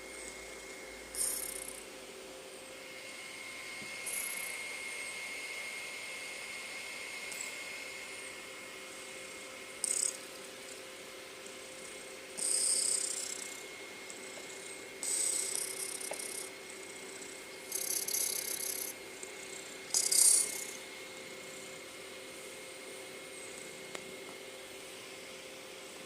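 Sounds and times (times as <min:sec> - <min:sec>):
faint background whine: 0:00.0 - 0:26.0
cat snoring: 0:11.6 - 0:20.8.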